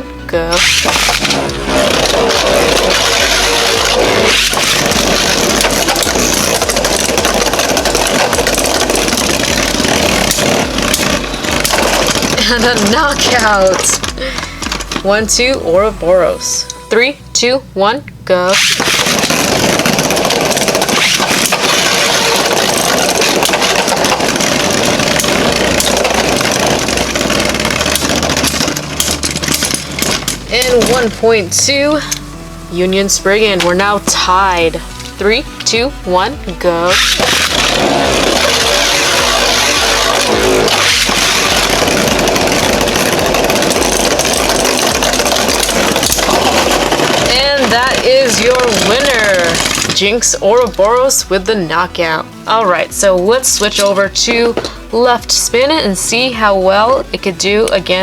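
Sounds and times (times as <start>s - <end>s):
spinning tops grinding whir: 0.0s - 16.8s, 18.5s - 58.0s
spinning tops clicking together: 0.5s - 15.6s, 18.6s - 32.3s, 36.9s - 51.2s.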